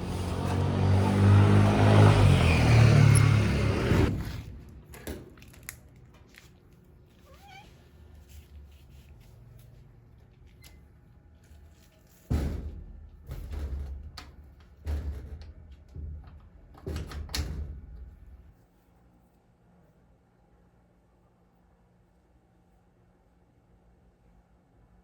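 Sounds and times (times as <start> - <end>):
loud rushing rumble: 0.0 - 4.8
cat meowing: 7.2 - 7.8.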